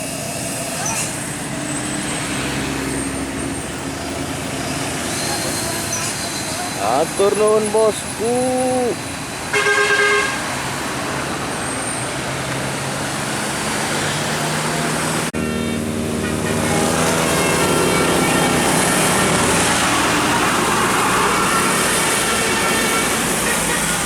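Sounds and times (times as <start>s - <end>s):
bus engine running: 0.0s - 24.0s
traffic noise: 0.0s - 24.0s
bus horn toot: 9.5s - 10.7s, 15.2s - 24.0s.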